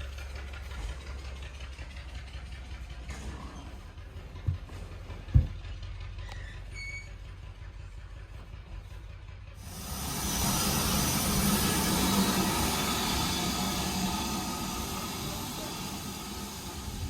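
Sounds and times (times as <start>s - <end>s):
steam locomotive rumble: 0.0s - 17.0s
loud hiss of steam: 9.6s - 17.0s.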